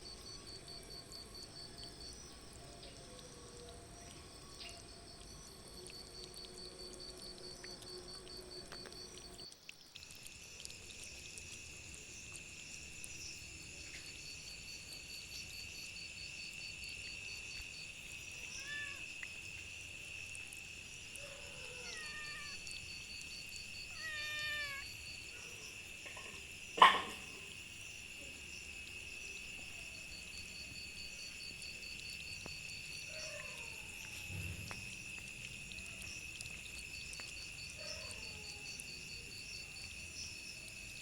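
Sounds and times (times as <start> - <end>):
cats meowing: 18.5 - 19.1, 21.4 - 22.7, 23.9 - 24.9.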